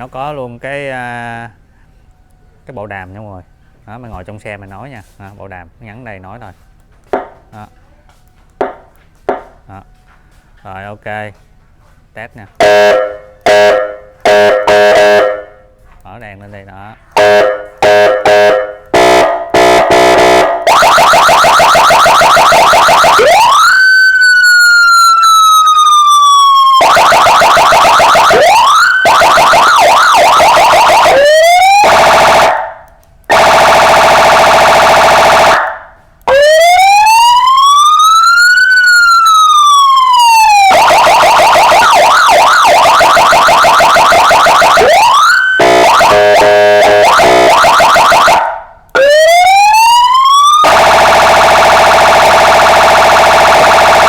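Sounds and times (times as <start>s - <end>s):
short horn blasts: 12.6s - 15.6s, 17.2s - 20.6s, 45.6s - 47.5s
steady buzzing horn tone: 12.6s - 15.7s, 17.2s - 20.7s, 45.6s - 47.6s
siren tone sweeping up and down: 17.2s - 32.7s, 33.3s - 54.0s
siren wail: 17.2s - 54.0s
rising siren yelps: 19.0s - 54.0s.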